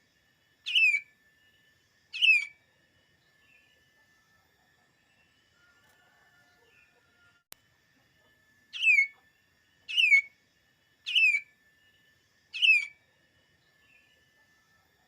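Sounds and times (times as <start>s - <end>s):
bird whistling descending notes: 2.1s - 2.5s, 9.9s - 10.3s, 11.1s - 11.5s, 12.5s - 13.0s.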